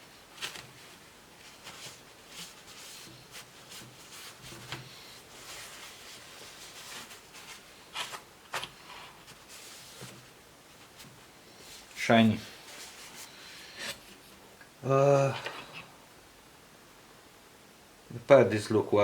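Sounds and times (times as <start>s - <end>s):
soft rubbing of laptop parts: 0.0s - 14.4s.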